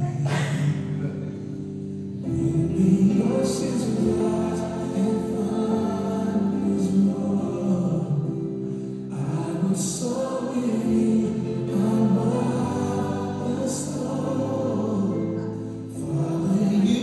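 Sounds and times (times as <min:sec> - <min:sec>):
choir singing gospel song: 0:02.2 - 0:17.0.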